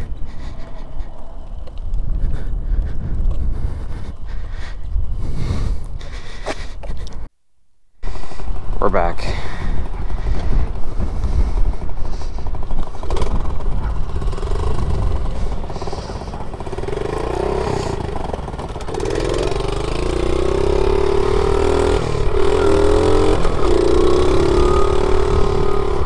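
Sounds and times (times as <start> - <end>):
motorbike engine revving: 8.1 - 26.0.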